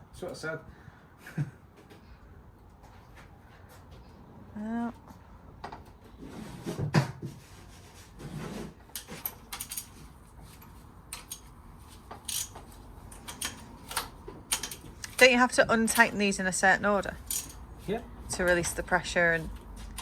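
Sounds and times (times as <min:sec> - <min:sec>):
tools and metal parts clinking: 0:08.9 - 0:16.3, 0:17.0 - 0:20.0.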